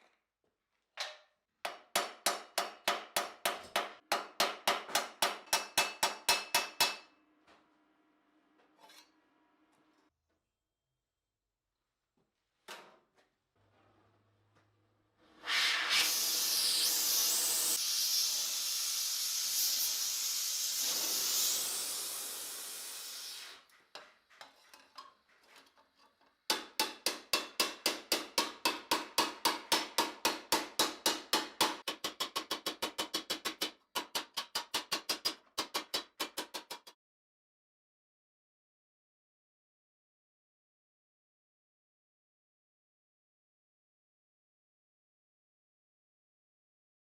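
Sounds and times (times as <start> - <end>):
steady loud hiss: 15.5 - 23.4
hammer blows on sheet steel: 26.5 - 37.0.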